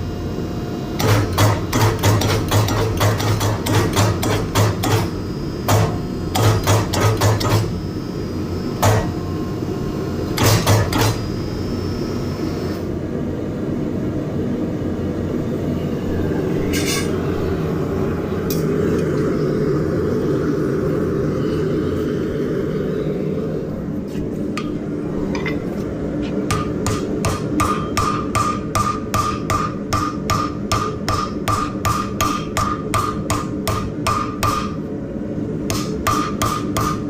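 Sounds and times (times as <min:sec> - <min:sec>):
steady low rumble: 0:12.9 - 0:30.6
hammer ringing on steel: 0:26.5 - 0:34.8.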